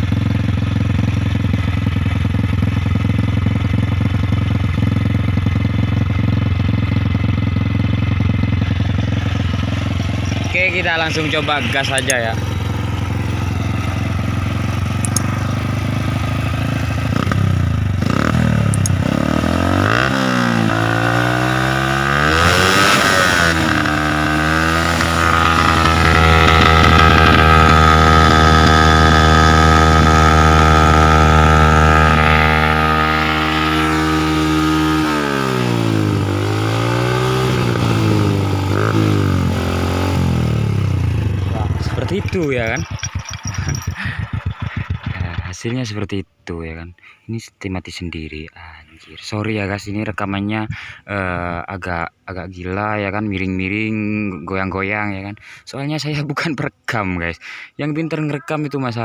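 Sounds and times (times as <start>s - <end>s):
motorcycle engine revving: 0.0s - 45.8s.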